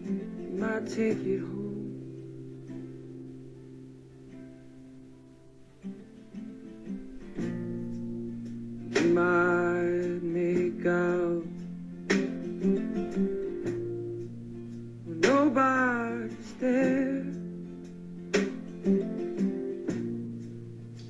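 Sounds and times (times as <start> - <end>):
person singing: 0.0 - 2.4, 8.9 - 13.5, 15.0 - 17.8
strummed guitar chords: 0.0 - 21.0.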